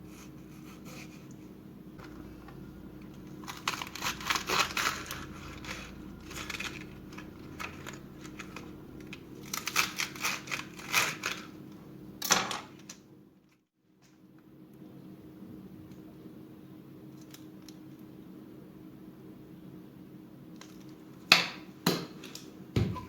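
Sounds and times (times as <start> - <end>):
low steady hum: 0.0 - 23.0
crinkling and crackling handling: 2.0 - 11.8.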